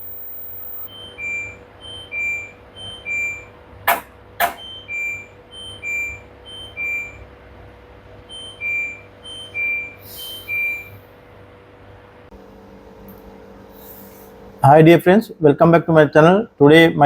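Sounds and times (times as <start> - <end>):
faint steady hum: 0.0 - 3.9
washing machine panel beeps: 0.0 - 7.3, 8.3 - 11.0.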